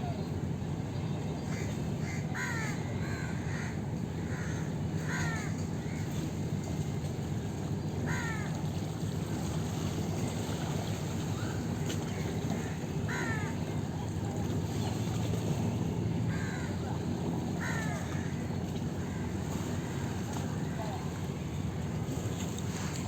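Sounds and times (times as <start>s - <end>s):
crows cawing: 1.5s - 6.1s, 8.1s - 8.6s, 12.1s - 13.6s, 16.3s - 16.8s, 17.6s - 20.1s.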